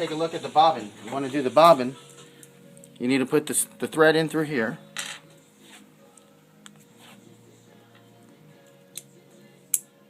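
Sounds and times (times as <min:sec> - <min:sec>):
quiet background music: 0:00.0 - 0:10.0.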